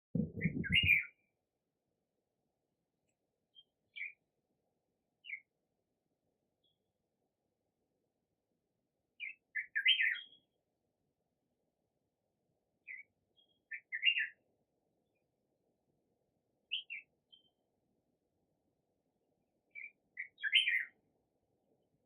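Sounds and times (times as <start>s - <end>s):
bird chirping: 0.2s - 1.2s, 3.5s - 4.2s, 5.2s - 5.5s, 9.2s - 10.6s, 12.8s - 14.4s, 16.7s - 17.6s, 19.7s - 21.0s.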